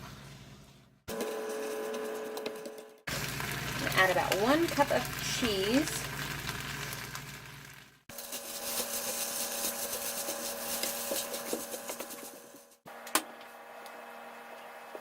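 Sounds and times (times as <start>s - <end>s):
utensils scraping and tapping dish: 8.3s - 12.4s.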